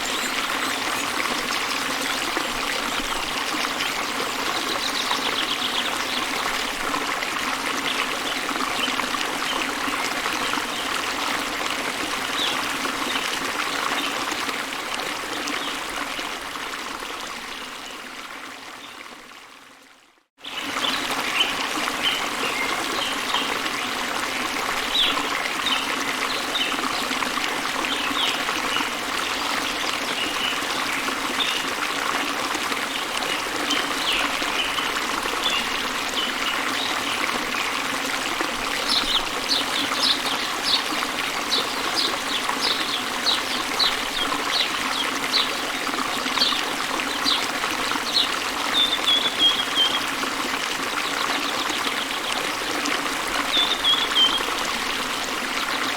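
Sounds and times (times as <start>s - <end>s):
birds chirping: 0.0s - 6.4s, 38.8s - 45.7s, 46.4s - 50.1s
waterfall running: 0.0s - 16.3s, 20.8s - 55.9s.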